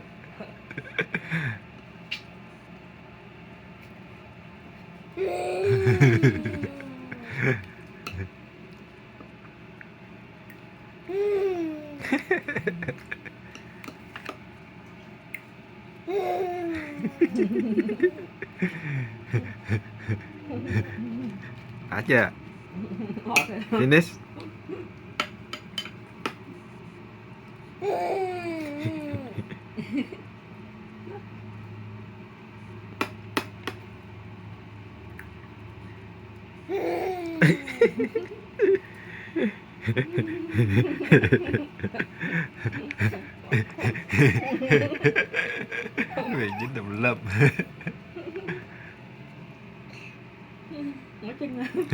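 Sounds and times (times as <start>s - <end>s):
low steady hum: 0.0s - 51.9s
baby making vocal sounds: 46.2s - 46.7s.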